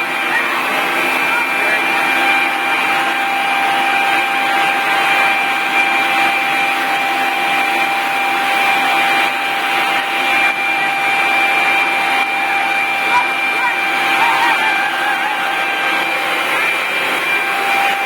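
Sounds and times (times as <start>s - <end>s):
leaf blower running: 0.0s - 18.0s.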